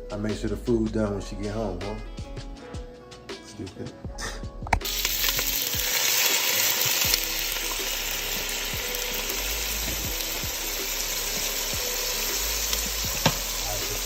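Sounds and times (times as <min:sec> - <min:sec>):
potatoes sizzling in a pan: 0:04.8 - 0:14.0.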